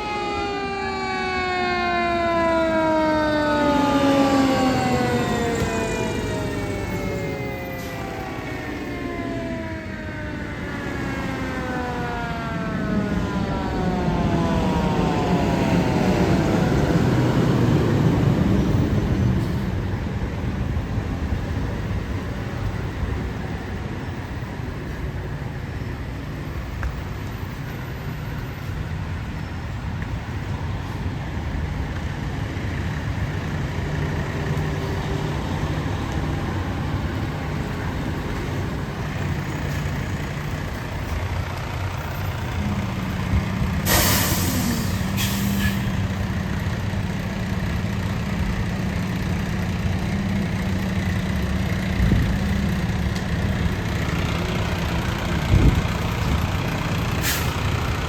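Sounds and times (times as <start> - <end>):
diesel truck engine rumble: 0.0 - 58.0
air brakes hissing: 19.4 - 19.8, 43.7 - 46.1, 57.2 - 57.9.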